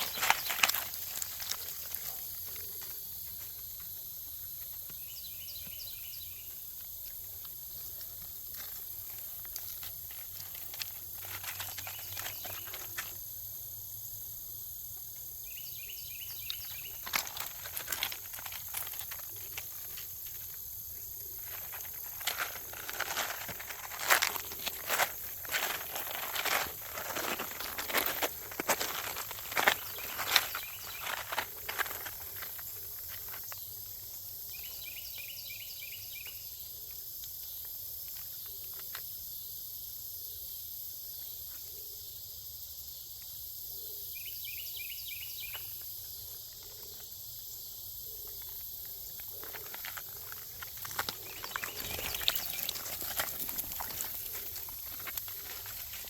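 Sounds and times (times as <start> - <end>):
crackling and rustling: 0.0 - 4.0, 6.8 - 13.2, 16.4 - 33.6, 48.4 - 56.0
insects buzzing: 0.0 - 56.0.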